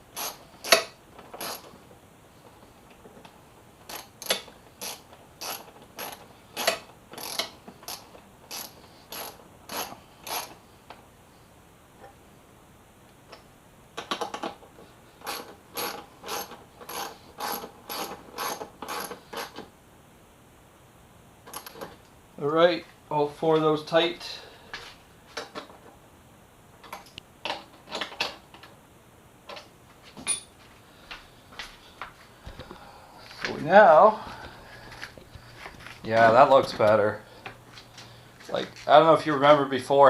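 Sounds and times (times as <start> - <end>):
socket ratchet clicking: 0.2 - 1.7.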